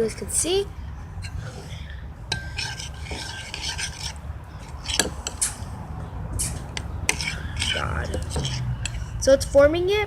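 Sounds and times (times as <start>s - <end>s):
spoon scraping slime in bowl: 2.4s - 5.7s, 6.4s - 9.6s.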